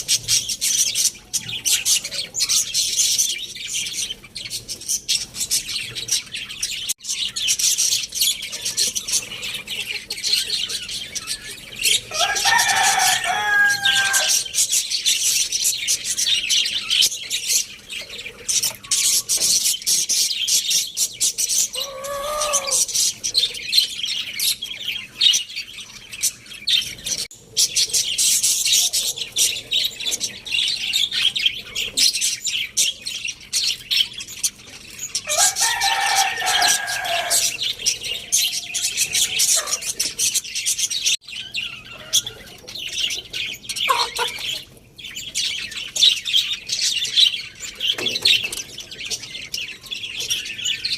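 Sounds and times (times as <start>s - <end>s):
small birds chirping: 0.0s - 50.9s
larger bird calling: 21.7s - 23.0s.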